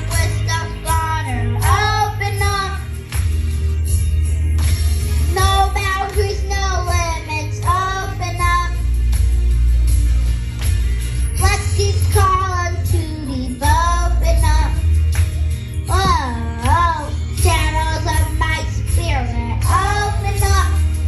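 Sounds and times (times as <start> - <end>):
boy singing: 0.0 - 2.9, 5.3 - 8.8, 11.4 - 14.9, 15.9 - 20.9
backing music with strong bass: 0.0 - 21.0.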